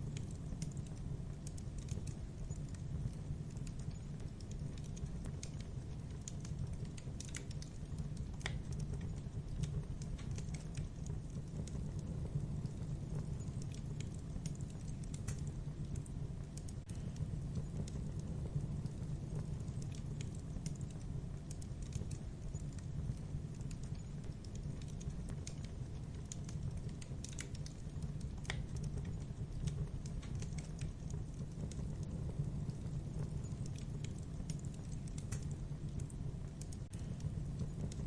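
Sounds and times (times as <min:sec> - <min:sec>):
logs crackling and popping in fire: 0:00.0 - 0:38.0
low fire rumble: 0:00.0 - 0:38.0.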